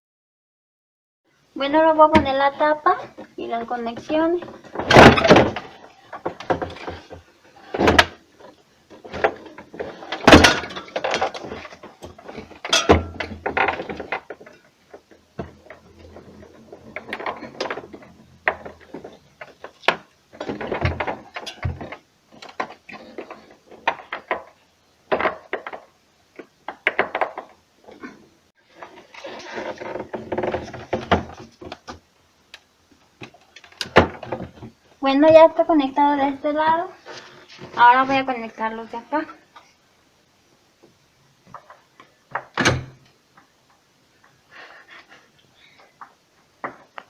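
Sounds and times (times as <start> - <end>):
plastic parts knocking and clicking: 4.4 - 27.6.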